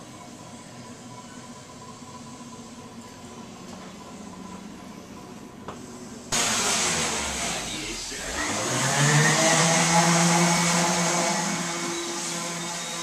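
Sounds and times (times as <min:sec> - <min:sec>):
loud steady hiss: 0:06.3 - 0:08.4
motor hum rising in pitch: 0:06.4 - 0:13.0.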